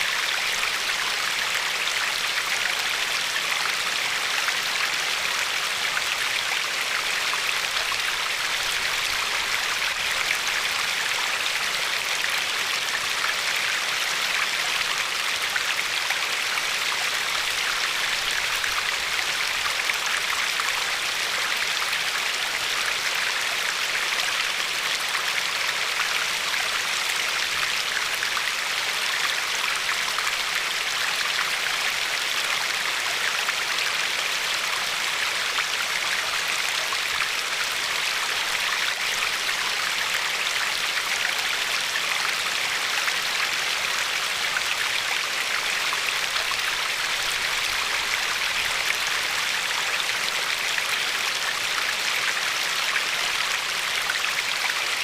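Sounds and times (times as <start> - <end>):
river water flowing over pebbles: 0.0 - 55.0.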